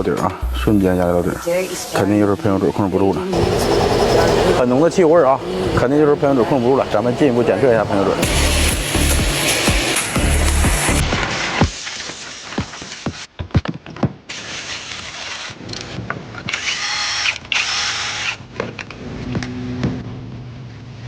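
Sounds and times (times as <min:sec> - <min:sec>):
power tool running: 0:03.3 - 0:07.4, 0:08.0 - 0:11.0.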